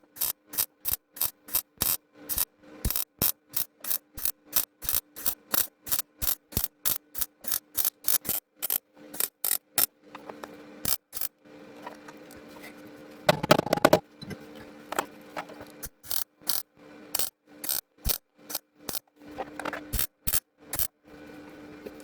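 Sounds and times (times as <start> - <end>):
welder crackling: 0.0 - 9.6
steady hum: 0.0 - 22.0.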